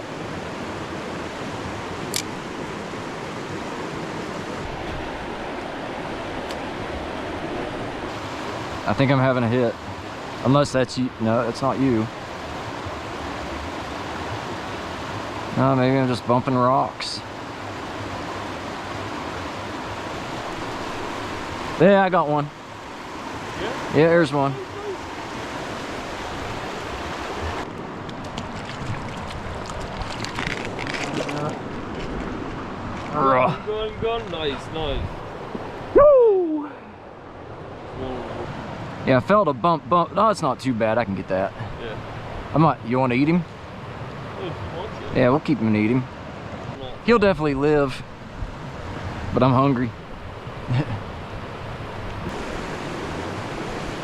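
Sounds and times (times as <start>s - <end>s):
river flowing over rocks: 0.0s - 16.0s, 17.2s - 33.0s, 50.0s - 54.0s
sharp click: 2.1s - 2.4s.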